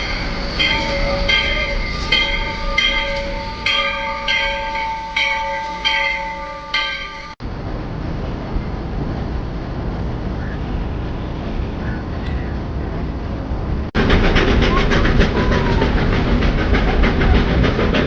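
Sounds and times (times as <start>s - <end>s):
locomotive bell ringing: 0.0s - 7.4s
moving train rumble: 0.0s - 18.0s.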